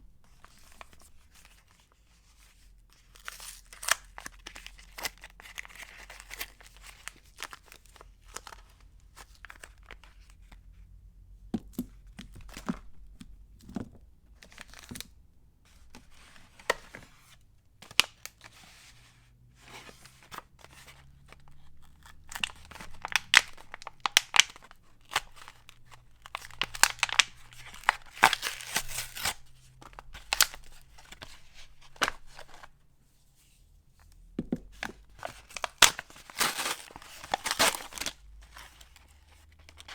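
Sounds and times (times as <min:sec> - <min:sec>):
wrappers tearing and crinkling: 0:21.6 - 0:29.5, 0:35.4 - 0:38.2.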